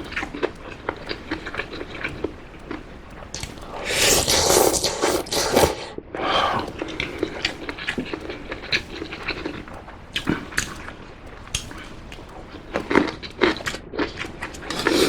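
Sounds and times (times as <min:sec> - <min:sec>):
chewing with wet clicks: 0:00.0 - 0:15.0
person slurping noodles: 0:03.8 - 0:06.7.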